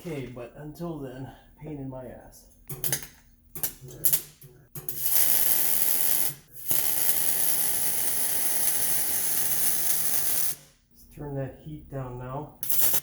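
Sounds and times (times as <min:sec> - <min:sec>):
welding arc crackling: 0:02.7 - 0:10.8, 0:12.6 - 0:13.0.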